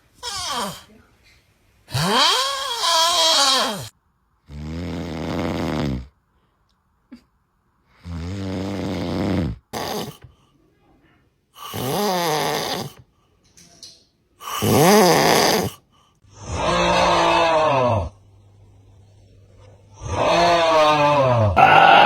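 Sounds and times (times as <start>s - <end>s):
low rattling snores: 4.5s - 6.1s, 8.0s - 10.2s, 11.6s - 13.0s, 14.4s - 15.8s
moaning snore tone: 4.5s - 6.1s, 8.0s - 10.2s, 11.6s - 13.0s, 14.4s - 18.2s, 19.9s - 22.0s.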